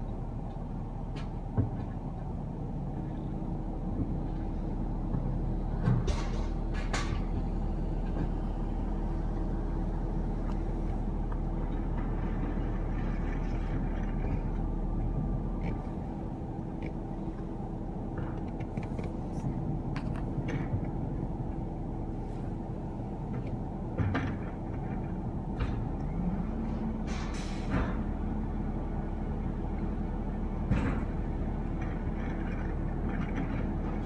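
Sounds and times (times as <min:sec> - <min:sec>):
diesel engine droning: 0:00.0 - 0:34.0.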